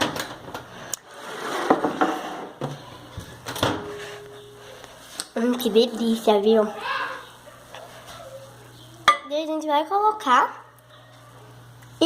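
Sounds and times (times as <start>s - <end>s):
kitchen things knocking and clattering: 0.0s - 0.7s.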